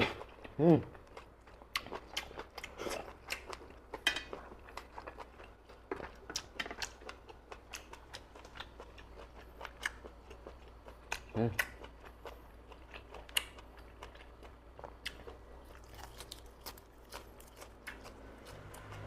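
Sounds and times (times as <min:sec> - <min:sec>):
wet mouth clicks and chewing: 0:04.3 - 0:19.0.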